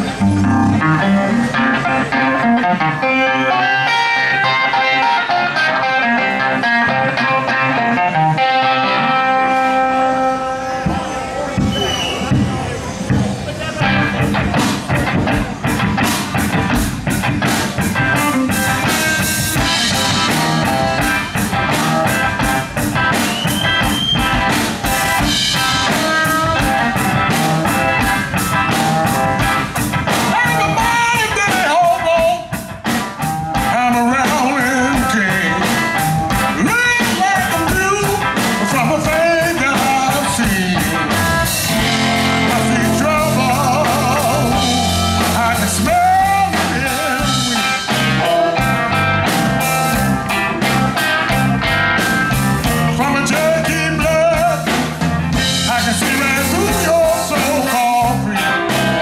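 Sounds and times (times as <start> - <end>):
blues band playing: 0.0 - 59.0
electric guitar lead bending: 0.0 - 59.0
steady drum beat: 10.8 - 59.0.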